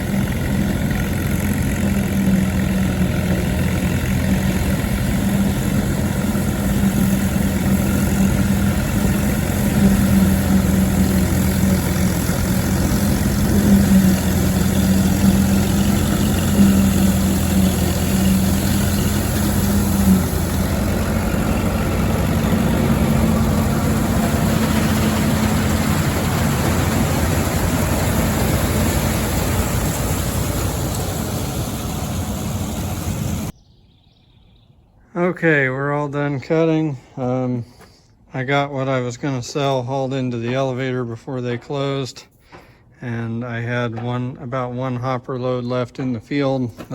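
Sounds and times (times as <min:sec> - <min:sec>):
tractor engine running: 0:00.0 - 0:33.6.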